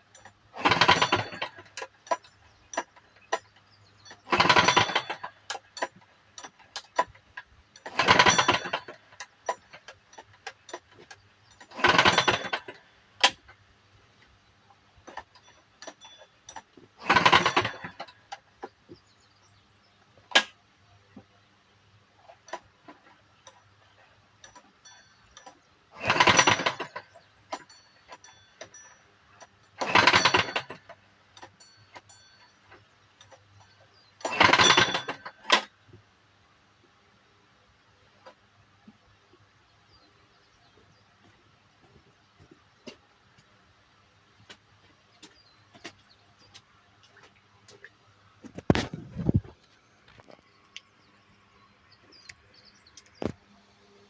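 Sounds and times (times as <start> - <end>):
engine rattling: 0.0 - 14.2, 15.0 - 20.5, 22.2 - 36.0
recoil starter pull with rattling: 0.0 - 14.3, 15.0 - 19.3, 20.2 - 21.3, 22.2 - 36.0, 44.4 - 50.5
sharp clicks: 52.2 - 53.4.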